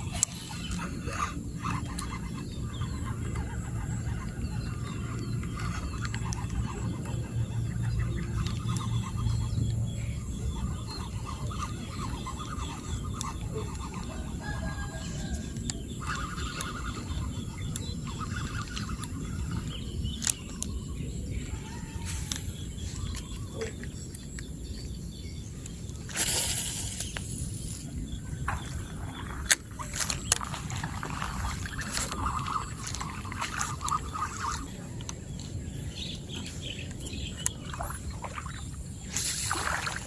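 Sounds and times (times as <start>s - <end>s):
faint chirping calls: 0.0s - 40.0s.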